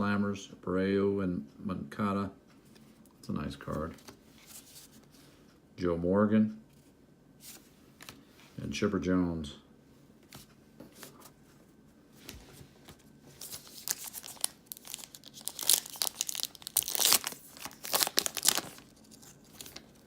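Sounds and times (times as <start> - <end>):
foil wrapper crinkling: 13.4 - 20.0.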